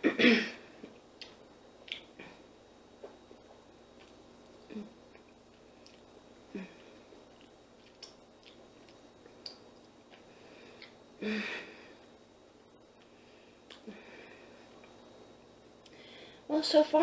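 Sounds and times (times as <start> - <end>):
person chewing: 0.8 - 2.2, 3.0 - 11.0, 13.0 - 13.9.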